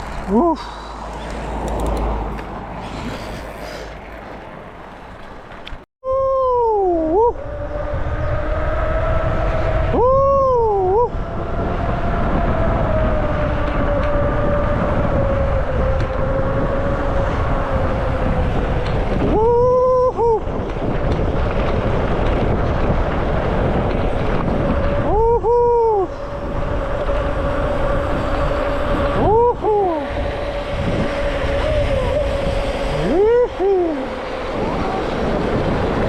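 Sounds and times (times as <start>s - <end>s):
tyres and wind rumble: 0.0s - 36.0s
short squeals: 1.0s - 5.1s.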